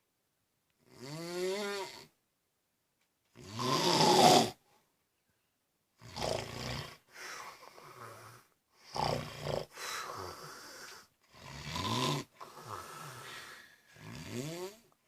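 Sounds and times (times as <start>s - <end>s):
man snoring: 0.9s - 2.1s, 3.4s - 4.6s, 6.0s - 14.9s.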